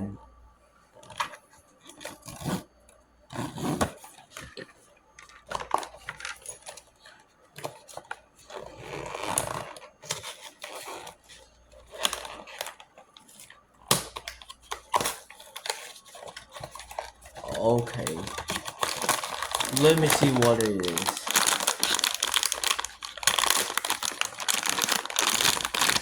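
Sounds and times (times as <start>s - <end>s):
packaging crinkling: 8.4s - 13.4s, 14.3s - 26.0s.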